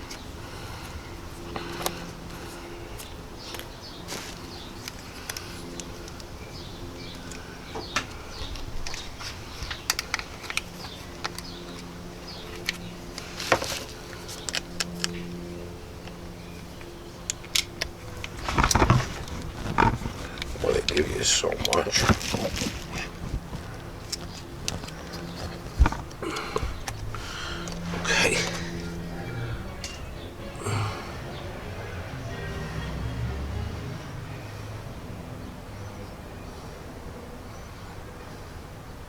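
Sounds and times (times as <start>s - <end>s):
small clicks and taps: 7.1s - 15.3s
packet rustling: 17.7s - 27.9s.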